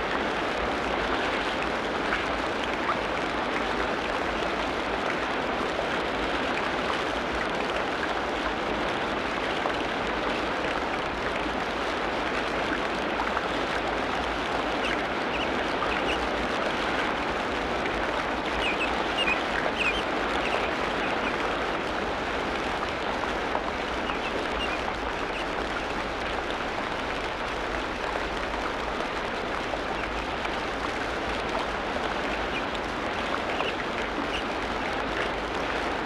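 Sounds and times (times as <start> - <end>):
faint high chirps: 18.6 - 20.7.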